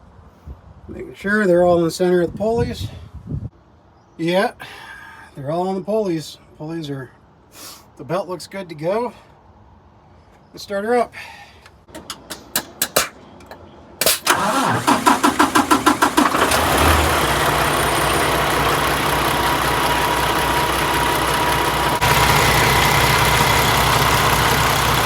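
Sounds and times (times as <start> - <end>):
starter motor cranking: 14.0 - 19.6
diesel engine idling: 14.2 - 25.0.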